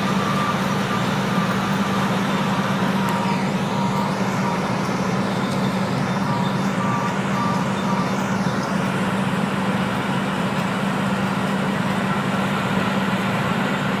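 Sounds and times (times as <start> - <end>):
short high beeps: 0.0 - 2.2, 2.9 - 8.3
drilling rig engine hum: 0.0 - 14.0.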